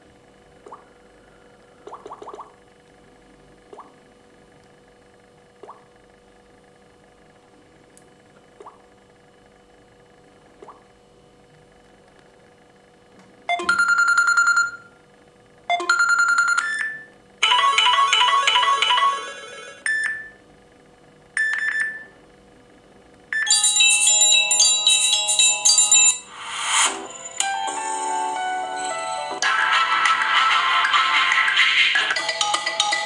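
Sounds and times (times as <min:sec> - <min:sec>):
ringtone melody: 0:17.4 - 0:20.3, 0:23.5 - 0:33.0
electronic chiming ringtones: 0:23.5 - 0:29.4.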